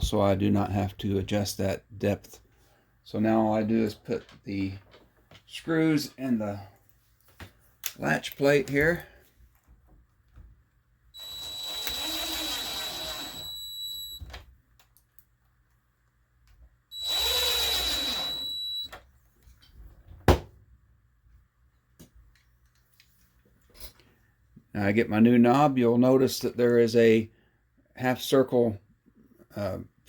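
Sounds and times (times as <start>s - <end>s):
power drill driving screws: 11.2s - 14.2s, 16.9s - 18.9s.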